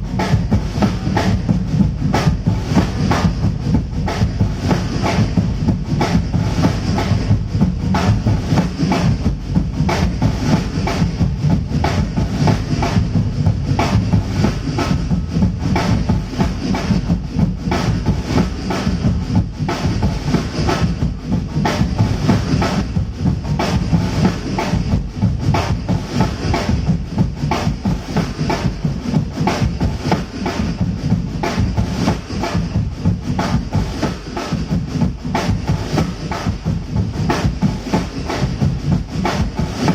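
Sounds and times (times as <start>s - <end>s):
drum-heavy music over pa system: 0.0s - 39.9s.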